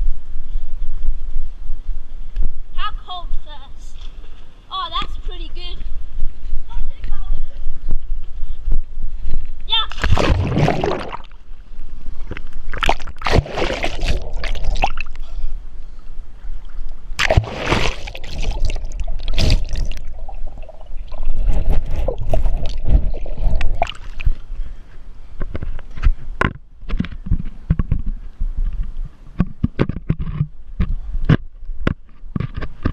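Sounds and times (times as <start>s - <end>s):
water splashing and sloshing: 9.2s - 15.5s, 16.6s - 24.6s.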